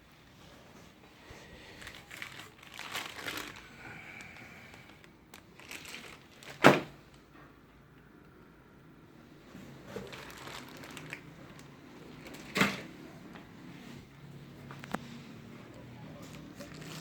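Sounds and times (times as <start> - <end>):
packaging crinkling: 1.8 - 7.2, 9.8 - 12.9, 16.2 - 17.0.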